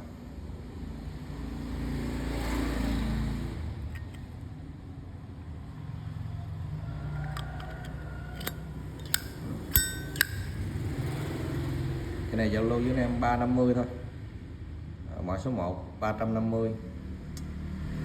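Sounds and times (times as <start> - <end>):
metallic lighter clicks: 7.3 - 10.8.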